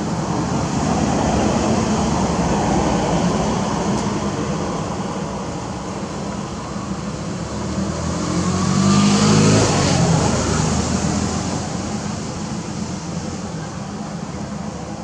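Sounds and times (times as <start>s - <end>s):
vehicle passing by: 7.4s - 12.3s.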